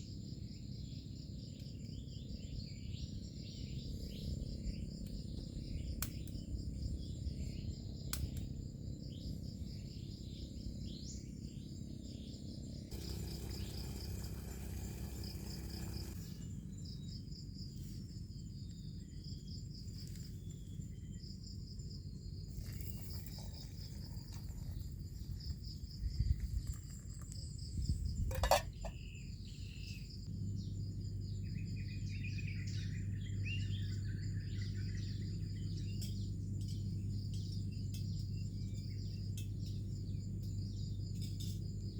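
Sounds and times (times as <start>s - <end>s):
insects trilling: 0.0s - 41.9s
low steady rumble: 0.2s - 41.9s
birds chirping: 9.9s - 17.4s.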